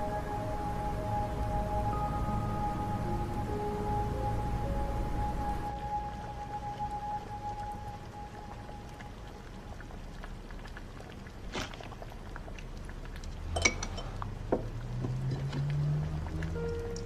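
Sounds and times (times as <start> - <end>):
broth simmering: 0.0 - 17.0
tableware clinking: 13.6 - 14.1.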